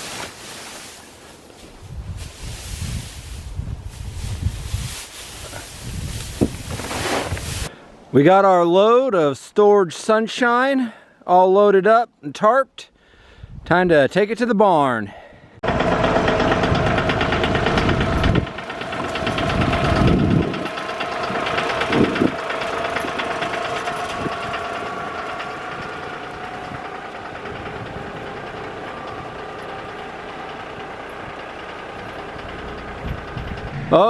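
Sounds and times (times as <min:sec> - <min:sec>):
vehicle engine running: 0:01.1 - 0:06.8, 0:15.6 - 0:34.0.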